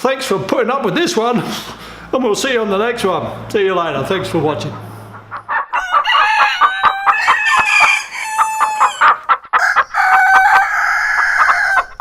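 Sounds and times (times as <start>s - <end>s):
chickens clucking: 4.0s - 12.0s
rooster crowing: 5.5s - 12.0s.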